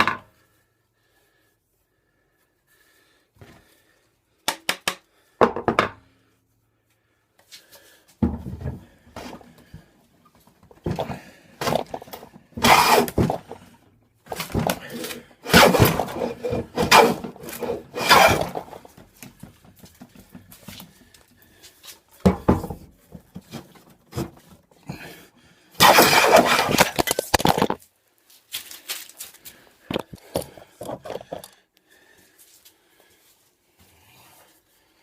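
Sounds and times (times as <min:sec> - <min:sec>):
sharp knocks of wood and tools: 0:04.5 - 0:06.0, 0:22.2 - 0:24.6
hand tool scraping wood: 0:08.4 - 0:09.9, 0:10.7 - 0:25.2, 0:25.8 - 0:27.7.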